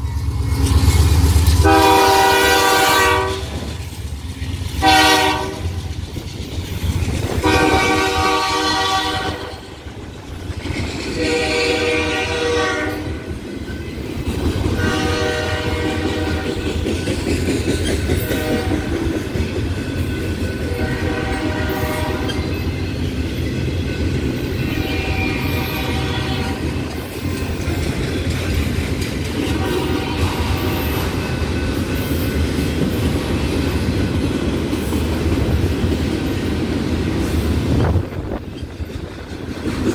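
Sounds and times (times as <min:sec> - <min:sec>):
train cars rumbling and clacking: 0:00.0 - 0:39.9
locomotive air horn blasts: 0:01.6 - 0:03.6, 0:04.8 - 0:05.8, 0:07.4 - 0:09.7, 0:11.2 - 0:13.2, 0:14.8 - 0:16.6, 0:18.3 - 0:18.9, 0:20.7 - 0:22.5, 0:24.6 - 0:26.9, 0:29.4 - 0:31.1.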